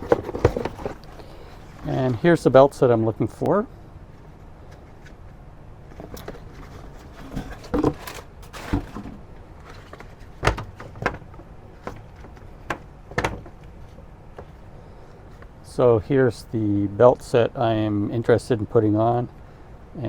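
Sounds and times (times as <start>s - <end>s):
knocks and clacks of parts: 0.0s - 1.2s, 5.9s - 14.5s
packaging rustling: 5.9s - 12.8s.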